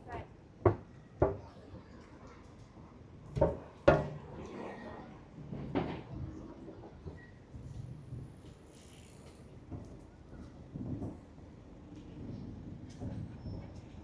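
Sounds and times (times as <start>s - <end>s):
faint voices of passers-by: 4.3s - 7.2s.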